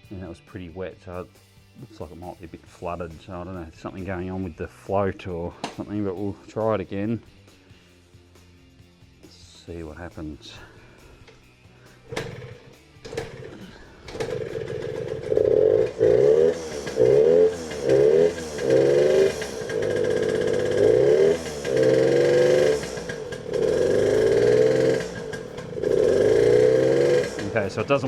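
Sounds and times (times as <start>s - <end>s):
two-stroke engine revving: 12.0s - 28.0s.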